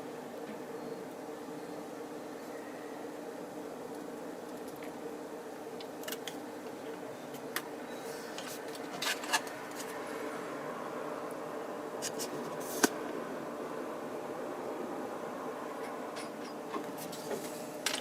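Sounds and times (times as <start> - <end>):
steady background hum: 0.0 - 18.0.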